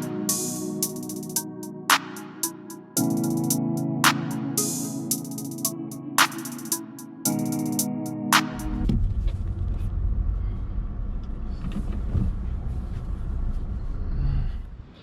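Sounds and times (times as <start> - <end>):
car road and engine rumble: 8.9 - 15.0.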